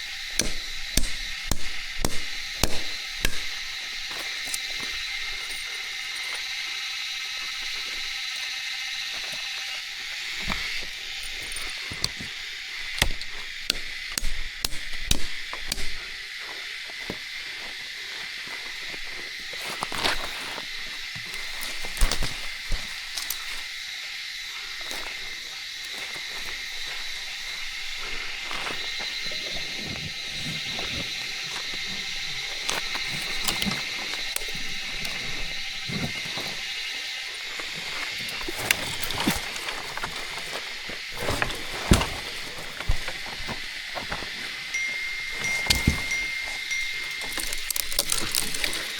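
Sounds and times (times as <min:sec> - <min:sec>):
sharp knocks and snaps: 0:00.0 - 0:04.9, 0:10.4 - 0:16.2
forest insects droning: 0:00.0 - 0:48.9.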